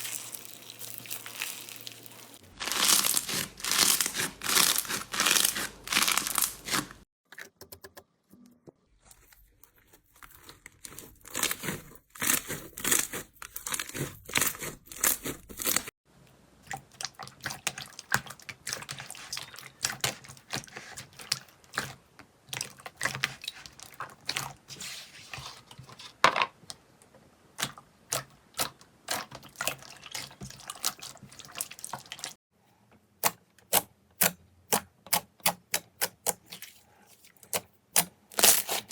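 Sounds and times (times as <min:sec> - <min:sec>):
slime squishing and popping: 0:02.6 - 0:06.8.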